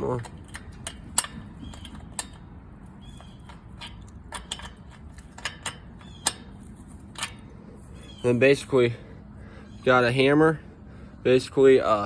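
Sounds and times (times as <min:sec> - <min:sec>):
wrench clicking on metal bolt: 0:00.0 - 0:07.5.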